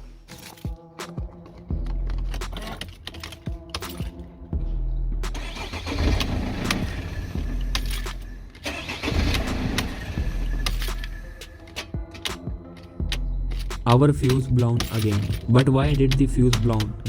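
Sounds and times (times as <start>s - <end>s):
rough mechanical noise: 5.2s - 11.7s
ignition key jangling and clicking: 10.6s - 17.0s.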